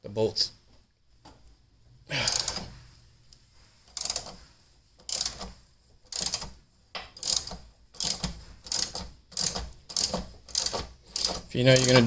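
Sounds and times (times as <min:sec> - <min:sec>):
ratchet wrench clicking: 0:04.0 - 0:04.4, 0:05.1 - 0:05.5, 0:06.1 - 0:06.5, 0:07.2 - 0:12.0.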